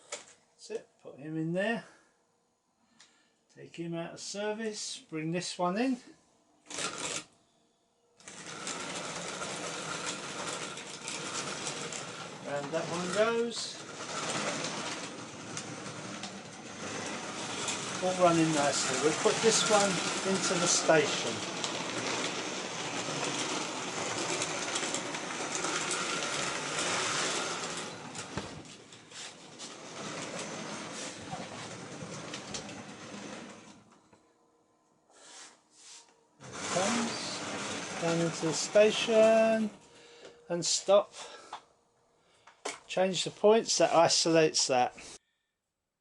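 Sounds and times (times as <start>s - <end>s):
model train motor running on track: 8.2s - 28.6s, 29.8s - 33.6s, 36.4s - 39.4s
wheels clicking on rails: 8.2s - 33.9s, 36.4s - 39.8s.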